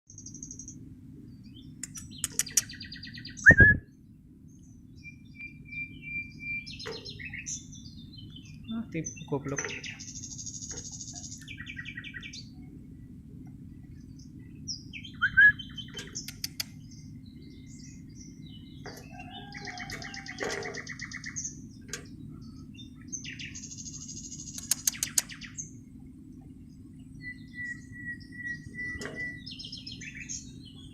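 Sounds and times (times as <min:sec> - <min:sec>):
bird calling with buzzy trills: 0:00.1 - 0:30.9
steady low hum: 0:00.1 - 0:30.9
sharp clicks: 0:01.8 - 0:02.8, 0:16.0 - 0:16.8, 0:24.5 - 0:25.4.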